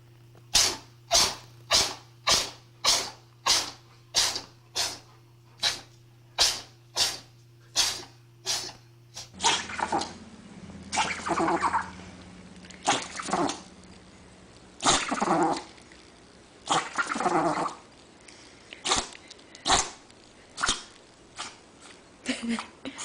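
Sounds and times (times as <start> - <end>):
dog sneezing: 0.5 - 10.1, 18.8 - 20.0.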